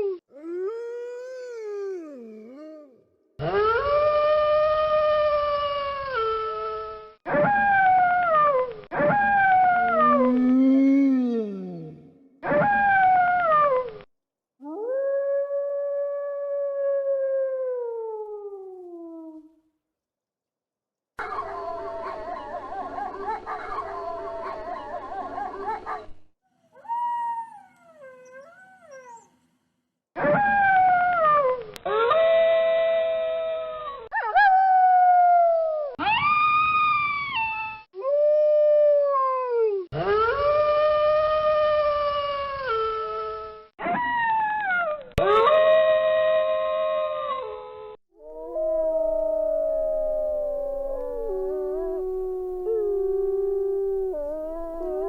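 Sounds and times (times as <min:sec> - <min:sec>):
wolves howling: 0:09.0 - 0:11.1, 0:48.3 - 0:55.0
wolves yipping: 0:21.2 - 0:26.2.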